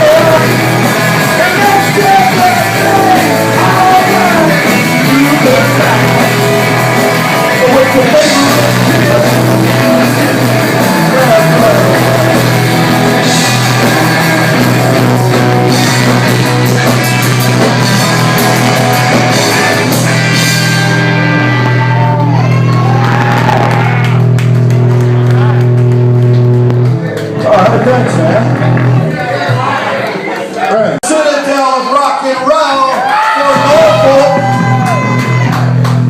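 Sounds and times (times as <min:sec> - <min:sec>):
person singing: 0:00.0 - 0:14.0
drums and cymbals: 0:00.0 - 0:21.0
distorted electric guitars: 0:00.0 - 0:30.0, 0:33.2 - 0:36.0
bass guitar: 0:00.0 - 0:31.0, 0:33.5 - 0:36.0.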